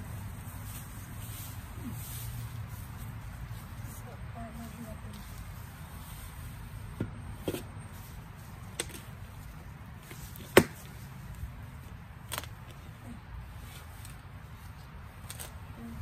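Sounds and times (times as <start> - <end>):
hand tool chopping into soil: 10.1 - 10.9.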